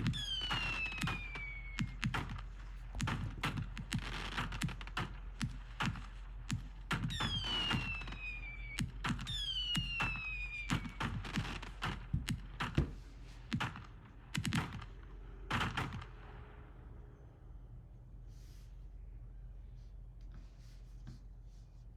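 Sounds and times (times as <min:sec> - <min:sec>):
falling firework whistles: 0:00.0 - 0:02.3, 0:07.0 - 0:11.8
fireworks bangs and crackles: 0:00.0 - 0:16.4.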